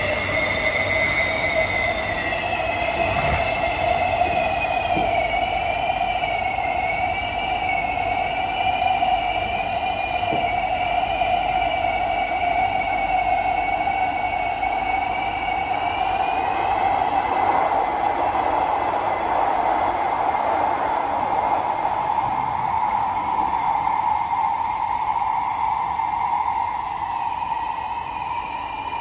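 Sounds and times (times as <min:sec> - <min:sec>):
wheels screeching on rails: 0:00.0 - 0:07.4, 0:13.4 - 0:29.0
train running in tunnel: 0:00.0 - 0:29.0.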